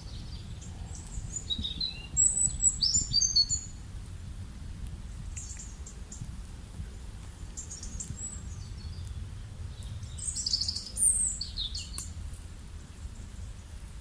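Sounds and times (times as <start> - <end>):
small birds chirping: 0.0 - 3.8, 5.3 - 6.4, 7.2 - 12.2
steady low rumble: 0.0 - 14.0.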